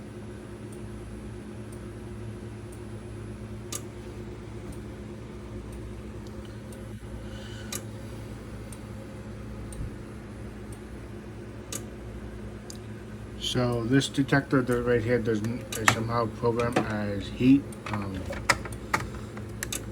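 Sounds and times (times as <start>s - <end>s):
low electrical hum: 0.0s - 19.9s
faint regular ticking: 5.5s - 19.9s.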